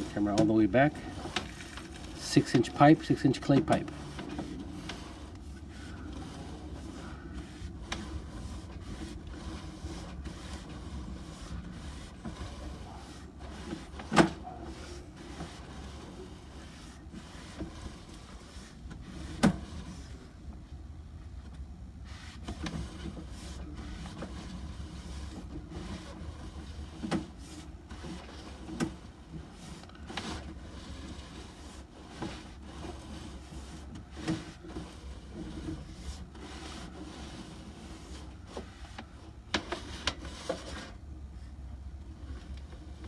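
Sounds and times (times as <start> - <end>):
cable rubbing and scraping: 0.0 - 20.3, 22.0 - 41.0
steady low hum: 0.0 - 43.0.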